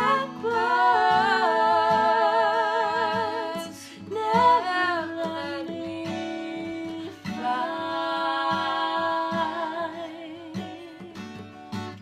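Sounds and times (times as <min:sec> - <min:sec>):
strummed acoustic guitar: 0:00.0 - 0:12.0.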